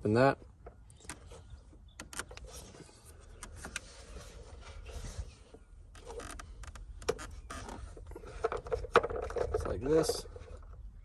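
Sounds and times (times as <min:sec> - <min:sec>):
faint rubbing and scraping: 0:02.4 - 0:10.9.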